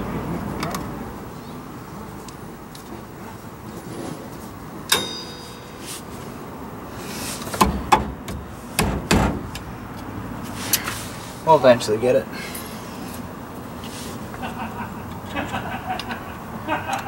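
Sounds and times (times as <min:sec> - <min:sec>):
metal clinks and knocks: 0:04.9 - 0:06.2.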